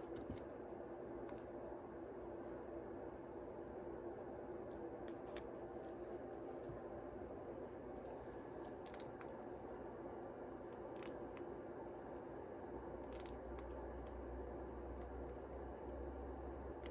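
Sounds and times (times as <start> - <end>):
steady low hum: 0.0 - 16.9.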